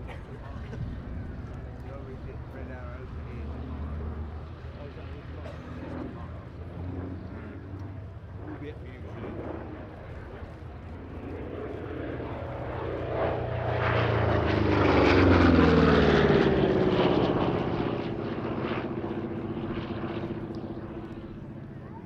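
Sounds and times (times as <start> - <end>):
aircraft radial engine fly-by: 0.0 - 22.0.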